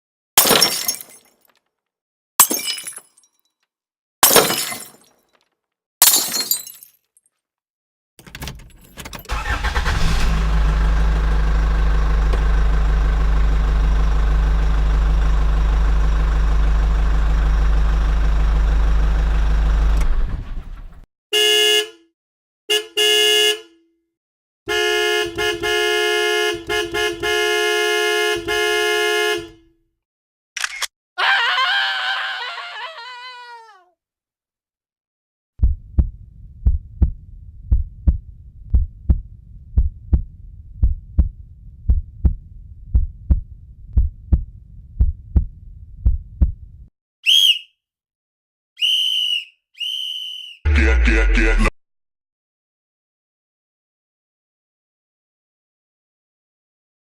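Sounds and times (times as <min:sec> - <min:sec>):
car horn honking: 0:09.3 - 0:10.3, 0:21.3 - 0:22.1, 0:22.7 - 0:23.9, 0:24.7 - 0:29.8
low rumble: 0:35.6 - 0:46.9.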